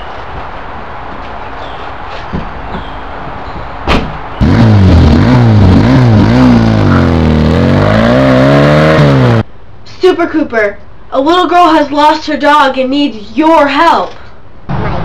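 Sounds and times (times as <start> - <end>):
car engine starting and revving: 4.4 - 9.4.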